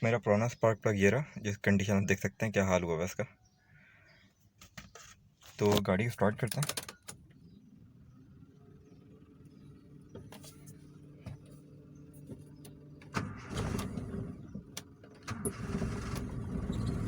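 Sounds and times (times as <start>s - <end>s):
car engine running: 7.2s - 17.0s
starter motor cranking: 12.6s - 17.0s.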